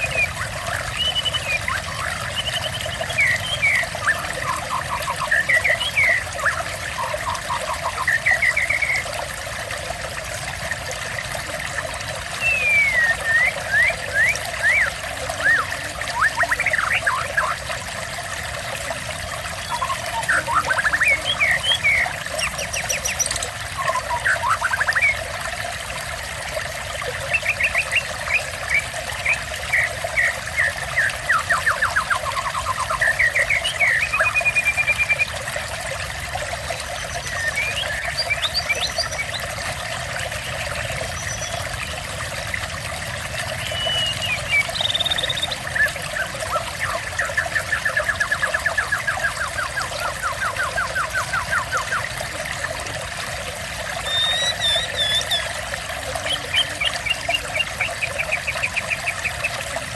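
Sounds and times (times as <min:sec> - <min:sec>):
small birds chirping: 0:00.0 - 0:09.2, 0:19.4 - 0:25.3, 0:36.5 - 0:42.0, 0:43.5 - 0:52.1, 0:53.9 - 0:59.9
water trickling: 0:00.0 - 0:59.9.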